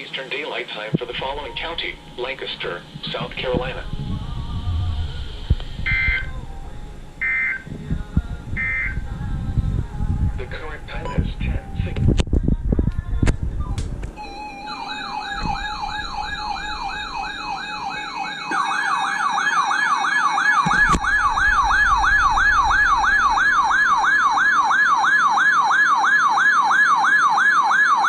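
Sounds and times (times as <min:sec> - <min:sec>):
electronic yelp siren: 0:04.6 - 0:06.5, 0:07.2 - 0:07.7, 0:08.6 - 0:09.0, 0:14.2 - 0:28.0.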